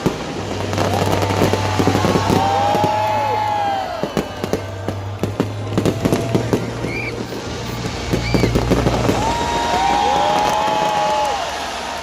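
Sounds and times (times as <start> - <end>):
fireworks crackling pops: 0.0 - 12.0
whistling glides: 6.6 - 7.3, 8.0 - 8.7.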